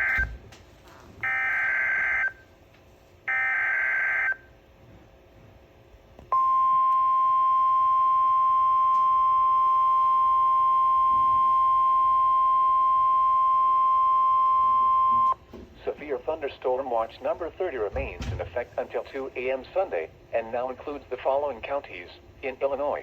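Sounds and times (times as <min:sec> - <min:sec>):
steady warning alarm tone: 0:00.0 - 0:00.4, 0:01.2 - 0:02.5, 0:03.3 - 0:04.6, 0:06.3 - 0:15.4.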